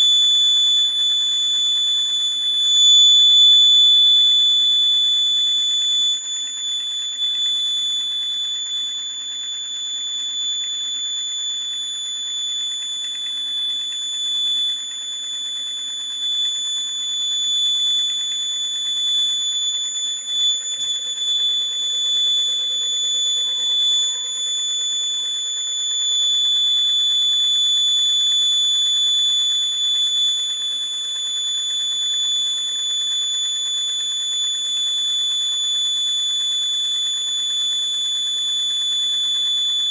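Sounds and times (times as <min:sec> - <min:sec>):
steady high-pitched tone: 0:00.0 - 0:15.0, 0:17.4 - 0:27.2.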